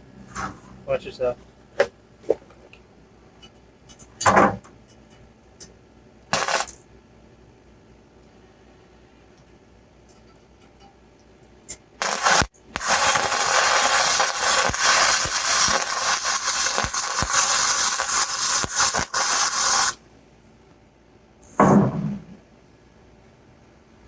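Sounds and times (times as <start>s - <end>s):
welder arc crackling: 6.3s - 6.8s, 12.0s - 20.0s.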